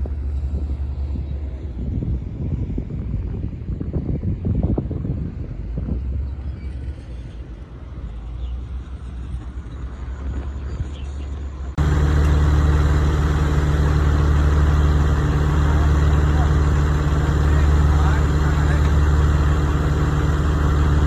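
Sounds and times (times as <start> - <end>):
wind noise: 0.0 - 8.0
steady engine hum: 0.0 - 21.0
low rumble: 11.7 - 21.0.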